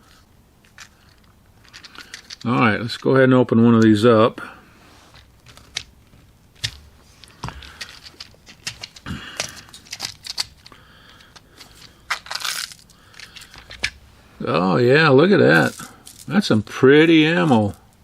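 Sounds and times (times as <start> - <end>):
box being opened crinkling: 11.3 - 14.0, 15.5 - 16.3.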